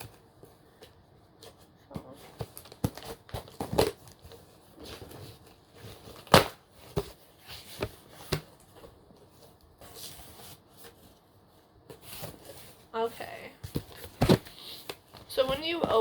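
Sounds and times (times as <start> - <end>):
cardboard box rustling and scraping: 1.4 - 11.2, 11.9 - 13.1
cardboard cracking: 2.3 - 8.7.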